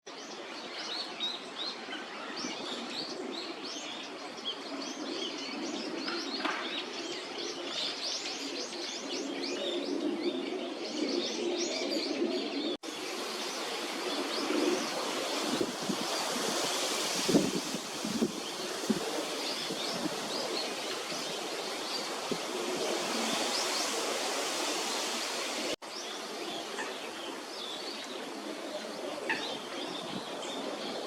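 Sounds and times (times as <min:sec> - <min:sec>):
steady hiss: 0:12.8 - 0:29.0.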